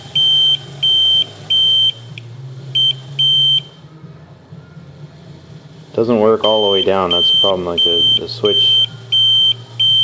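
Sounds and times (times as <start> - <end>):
high electronic reverse beeper: 6.4 - 10.0.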